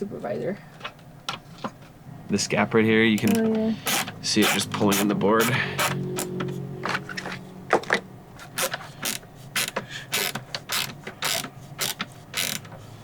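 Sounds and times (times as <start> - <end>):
screwdriver hum: 3.1 - 7.3, 8.4 - 13.0
sharp clicks and knocks: 3.1 - 12.8.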